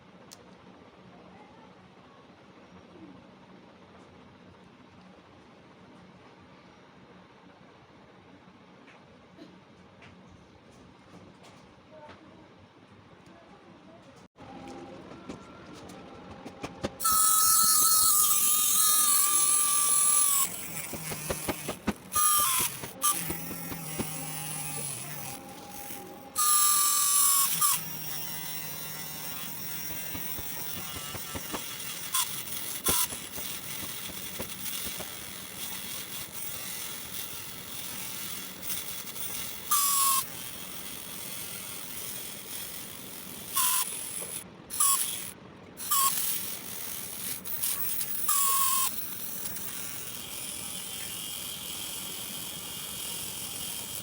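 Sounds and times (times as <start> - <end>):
loud whirring bursts: 14.4 - 54.0
small motor buzzing whine: 14.4 - 54.0.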